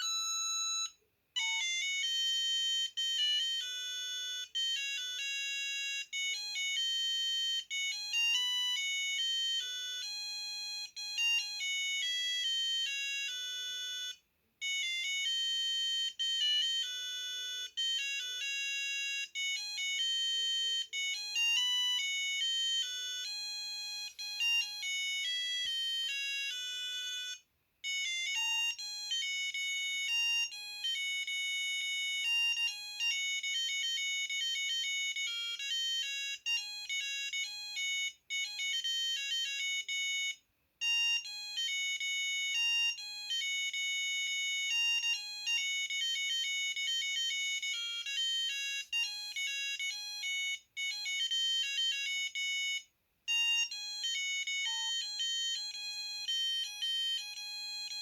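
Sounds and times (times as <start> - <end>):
electronic phone ringtone: 0.0 - 58.0.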